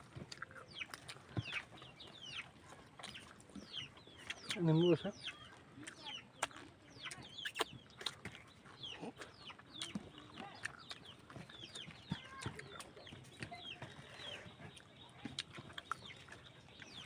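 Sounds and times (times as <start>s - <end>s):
chickens clucking and chicks peeping: 0.0s - 17.0s.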